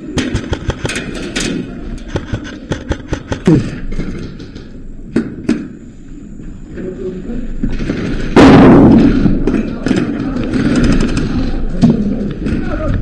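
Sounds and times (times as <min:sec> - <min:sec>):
airsoft gun clicks and knocks: 0:00.2 - 0:03.5
loud thud: 0:08.4 - 0:09.4.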